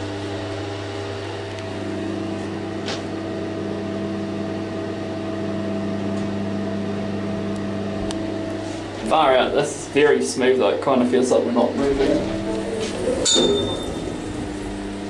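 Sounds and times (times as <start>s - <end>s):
lift car humming: 11.5s - 15.0s.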